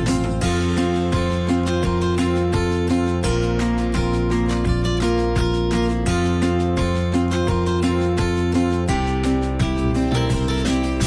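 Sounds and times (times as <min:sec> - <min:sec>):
acoustic guitar music: 0:00.0 - 0:11.0.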